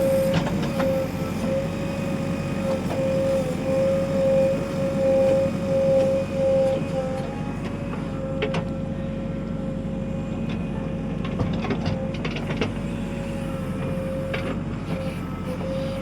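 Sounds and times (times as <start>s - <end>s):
diesel engine running: 0.0s - 16.0s
steady whine: 0.0s - 16.0s.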